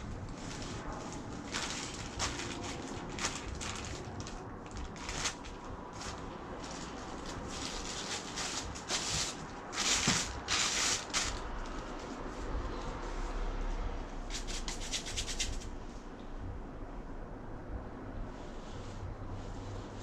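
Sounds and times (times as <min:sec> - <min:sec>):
hand rubbing strokes on surface: 0:18.2 - 0:20.0.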